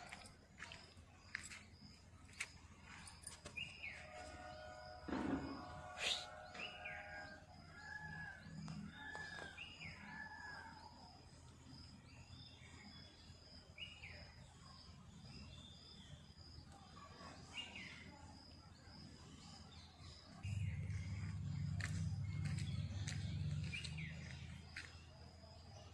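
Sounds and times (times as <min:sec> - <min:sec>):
small birds chirping: 0:11.4 - 0:25.9
low rumble: 0:20.4 - 0:24.7.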